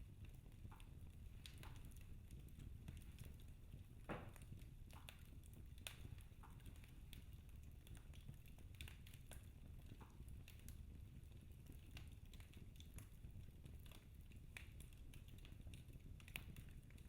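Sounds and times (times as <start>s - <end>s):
fireplace fire crackling: 0.0s - 17.0s.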